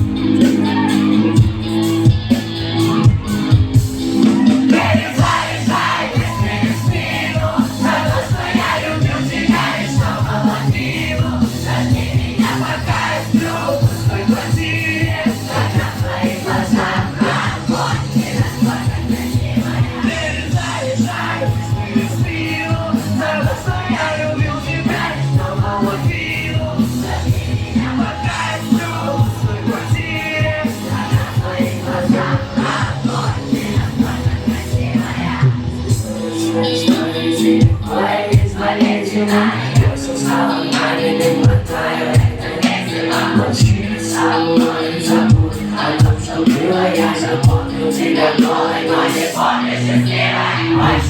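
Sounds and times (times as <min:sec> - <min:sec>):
pop-rock song: 0:00.0 - 0:51.0.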